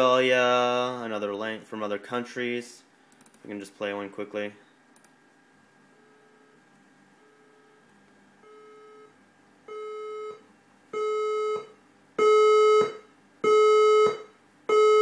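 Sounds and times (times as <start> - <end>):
fire alarm beeps: 9.7 - 10.4, 11.0 - 15.0.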